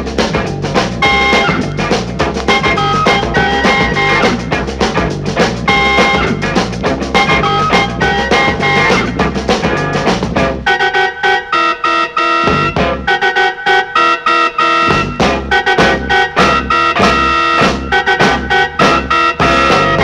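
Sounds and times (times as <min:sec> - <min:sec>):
drum kit: 0:00.0 - 0:10.6, 0:12.5 - 0:13.1, 0:14.9 - 0:20.0
bass line: 0:00.0 - 0:10.7, 0:12.5 - 0:13.1, 0:14.9 - 0:20.0
guitar playing a driving groove: 0:00.0 - 0:10.7, 0:14.9 - 0:20.0.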